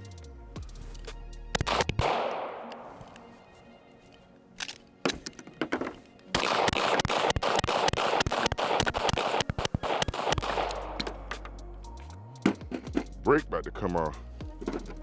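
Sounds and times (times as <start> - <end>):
pistol shots: 1.6 - 3.2, 6.4 - 11.4.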